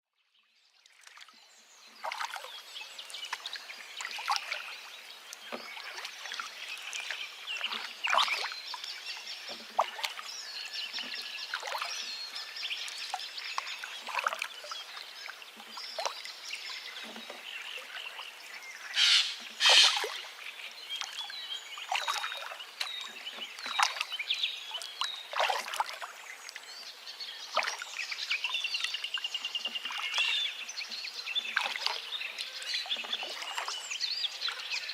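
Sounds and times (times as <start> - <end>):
songbirds chirping: 0.2 - 34.9
river babbling and splashing: 0.8 - 34.9
rapid bird trill: 19.0 - 20.0.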